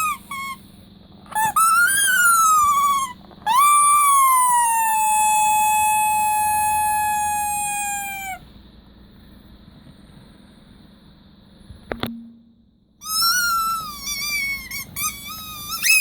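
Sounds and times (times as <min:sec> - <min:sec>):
squeaky toy squeak: 0:00.0 - 0:00.6, 0:01.3 - 0:08.4, 0:13.0 - 0:16.0.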